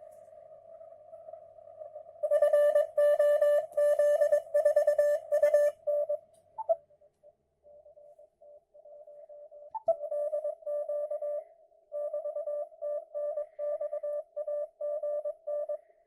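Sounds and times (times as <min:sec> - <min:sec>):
morse code beeps from radio: 0:02.3 - 0:06.8.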